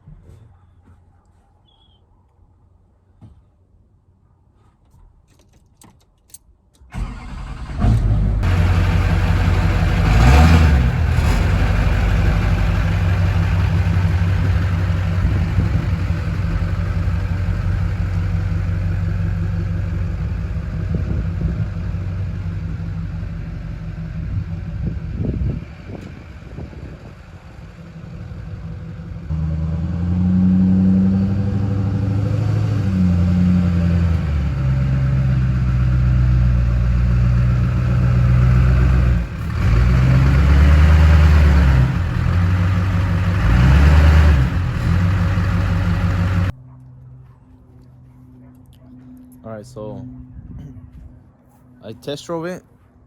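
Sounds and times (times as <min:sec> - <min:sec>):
diesel truck engine running: 0:06.9 - 0:46.6.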